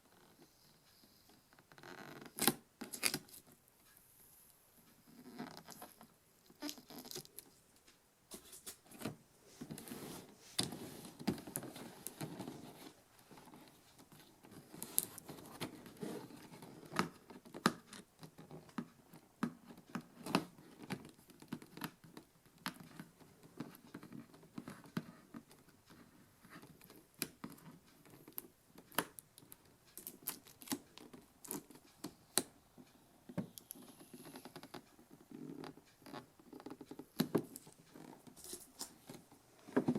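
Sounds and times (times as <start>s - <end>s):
cardboard and plastic rustling: 36.8s - 39.9s.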